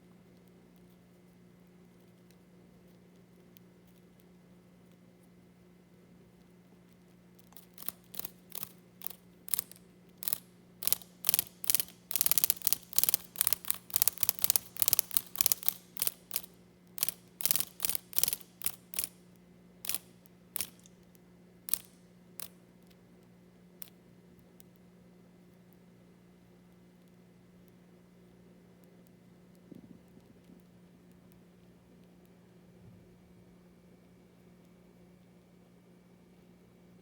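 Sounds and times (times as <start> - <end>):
faint low hum: 0.0 - 37.0
cicada buzzing: 10.2 - 19.1.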